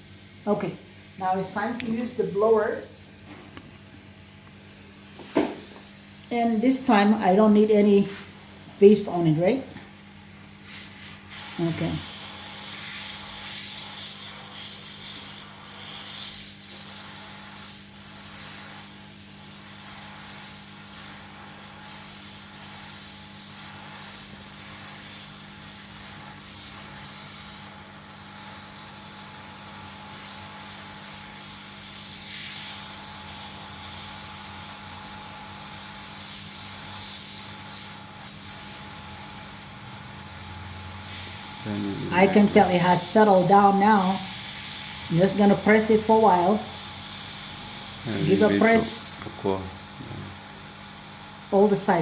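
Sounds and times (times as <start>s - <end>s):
hot air blower humming: 0.0s - 18.9s, 38.3s - 52.0s.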